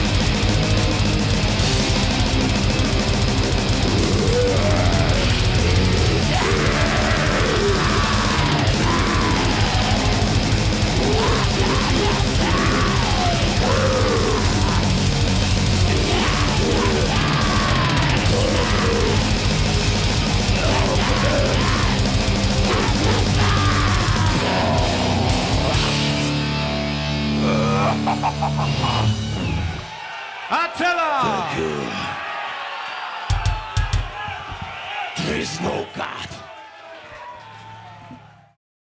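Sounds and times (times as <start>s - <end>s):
bass guitar: 0.0s - 29.9s
distorted electric guitars: 0.0s - 30.0s
drums: 0.0s - 30.3s, 32.9s - 36.4s.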